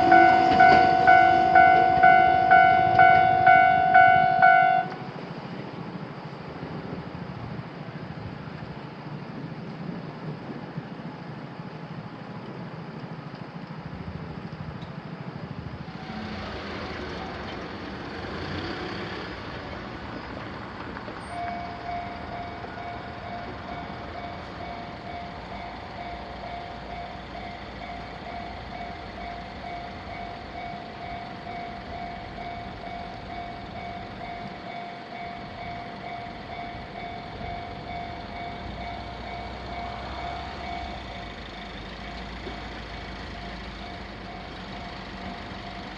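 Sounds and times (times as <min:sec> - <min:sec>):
crossing warning bell ringing: 0:00.0 - 0:05.6, 0:21.1 - 0:45.9
road traffic: 0:00.0 - 0:45.9.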